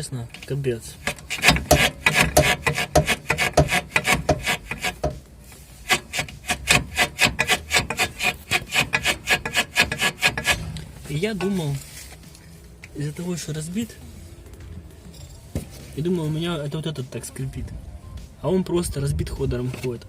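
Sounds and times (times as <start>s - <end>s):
suspension bushing creaking and squealing: 0.0s - 5.2s, 5.8s - 11.8s.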